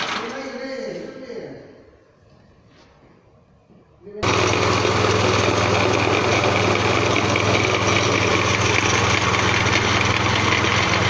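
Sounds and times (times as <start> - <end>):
pellet machine droning: 4.2 - 11.0.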